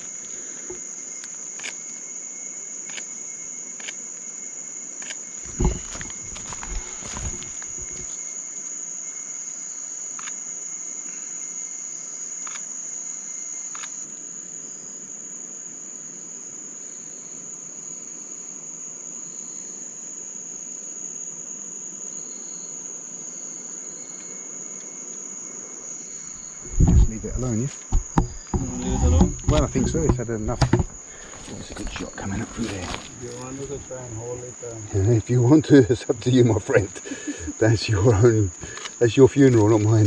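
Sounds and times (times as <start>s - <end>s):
night insects trilling: 0.0s - 40.0s
low thumps: 5.4s - 8.1s, 26.4s - 34.4s.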